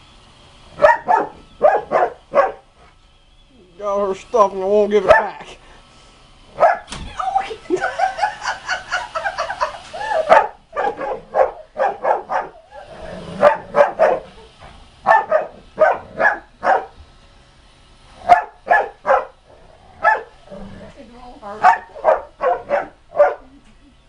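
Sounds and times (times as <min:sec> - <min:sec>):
dog barking deeply: 0:00.8 - 0:02.7, 0:05.0 - 0:05.5, 0:06.6 - 0:06.9, 0:10.1 - 0:17.0, 0:18.2 - 0:20.4, 0:21.6 - 0:23.5.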